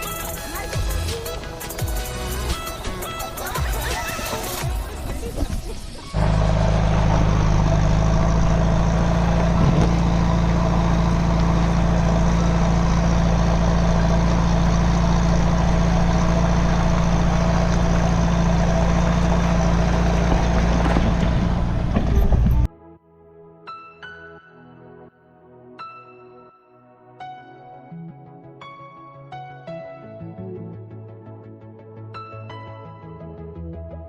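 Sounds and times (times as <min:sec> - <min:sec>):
engine running: 0:00.0 - 0:22.7.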